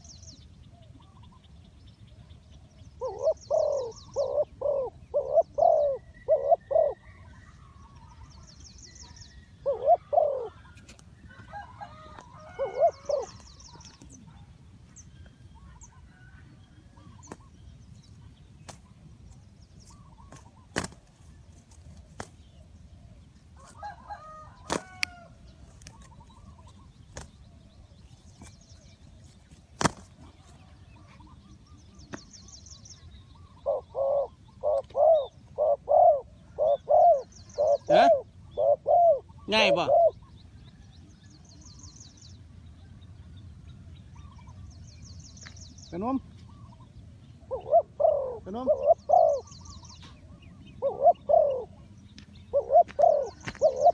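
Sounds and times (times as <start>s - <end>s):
small birds chirping faintly: 0.0s - 53.9s
dove cooing: 2.9s - 8.4s, 9.6s - 14.5s, 33.3s - 40.4s, 46.4s - 53.9s.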